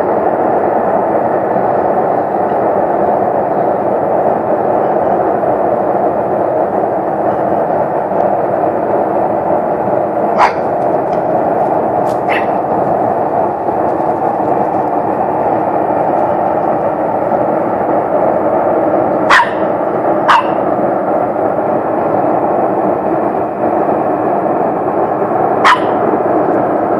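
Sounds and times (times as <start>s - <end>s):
loud steady rumbling from sky: 0.0s - 26.9s
dog barking: 10.3s - 10.8s, 12.1s - 12.7s, 19.3s - 20.6s, 25.6s - 26.1s.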